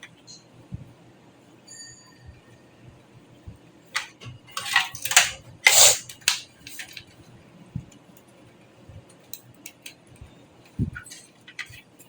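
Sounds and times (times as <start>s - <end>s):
metal computer parts clicking and rattling: 4.0s - 5.4s, 6.1s - 7.1s, 11.0s - 12.0s.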